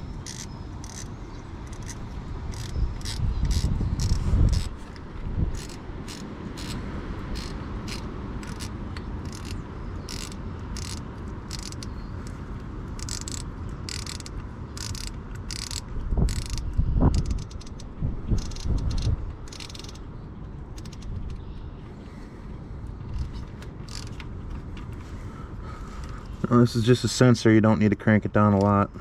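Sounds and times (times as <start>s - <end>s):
ratchet clicking: 0.0s - 20.1s, 20.7s - 21.6s, 23.1s - 24.2s.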